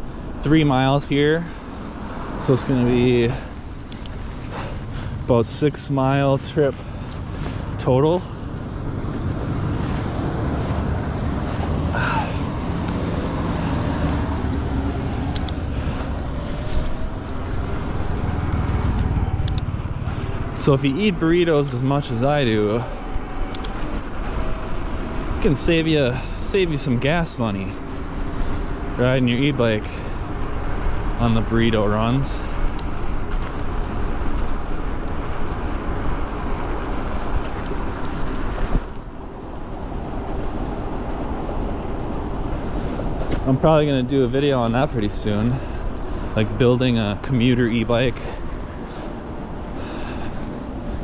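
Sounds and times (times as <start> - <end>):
wind rumbling on microphone: 1.8 - 29.6.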